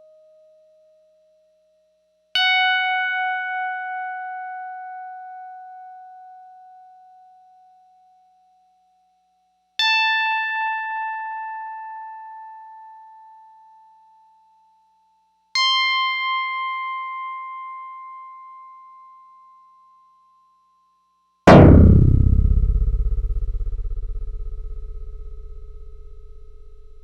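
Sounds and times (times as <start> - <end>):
deep synthesized hit with sweep: 21.5 - 27.0.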